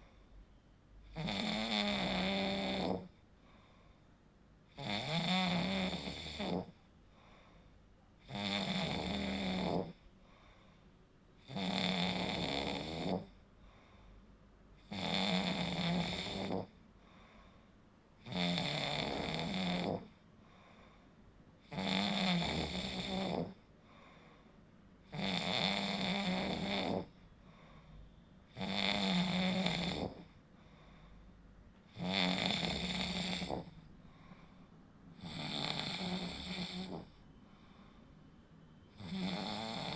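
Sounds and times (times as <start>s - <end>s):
quiet breaths: 0.0s - 39.9s
person snoring: 1.1s - 3.2s, 4.8s - 6.8s, 8.2s - 10.0s, 11.4s - 13.4s, 14.8s - 16.8s, 18.2s - 20.8s, 21.6s - 24.2s, 25.1s - 27.2s, 28.5s - 31.0s, 31.9s - 34.5s, 35.2s - 38.0s, 38.9s - 39.9s.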